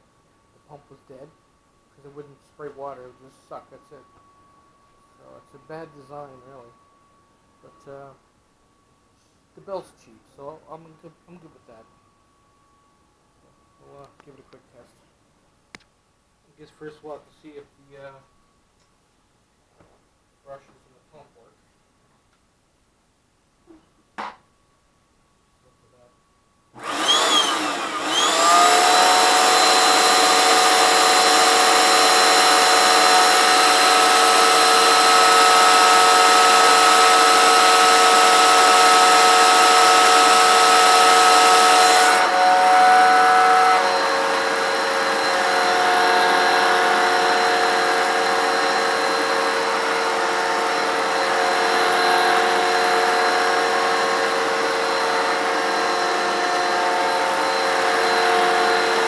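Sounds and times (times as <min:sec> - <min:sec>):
carpet cleaner motor whine: 0:26.8 - 0:59.0.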